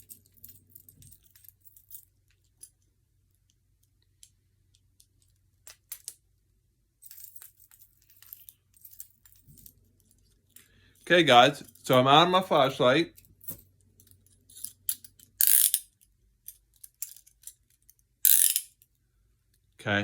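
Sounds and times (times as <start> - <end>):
metallic clicks of handcuffs: 0.0 - 6.2, 13.1 - 19.6.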